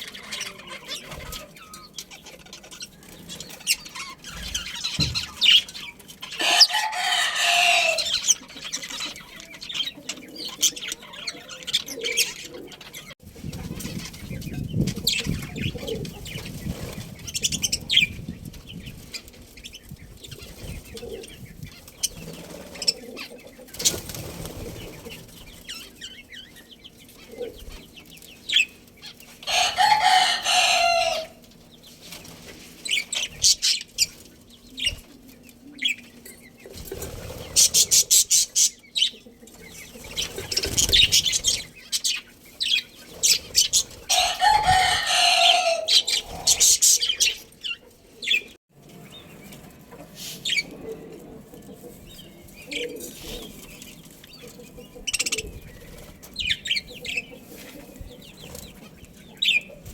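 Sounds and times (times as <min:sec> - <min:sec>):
budgies chirping: 0:00.0 - 0:49.6, 0:51.9 - 0:59.9
wings fluttering: 0:13.2 - 0:35.4, 0:36.7 - 0:38.7, 0:39.5 - 0:48.4.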